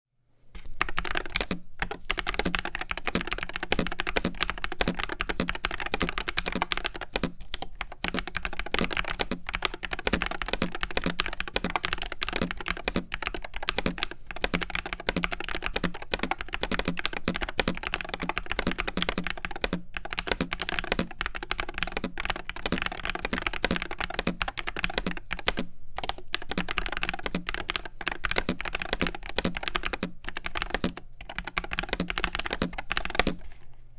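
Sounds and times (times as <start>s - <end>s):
keyboard typing clacks: 0.6s - 33.4s.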